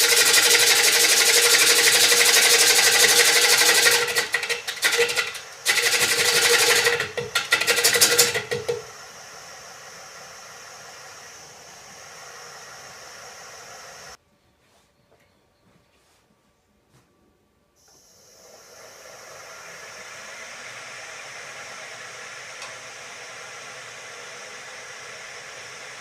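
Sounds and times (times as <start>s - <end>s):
gouge cutting wood: 0.0s - 8.9s
lathe humming and whining: 0.0s - 14.2s, 18.0s - 26.0s.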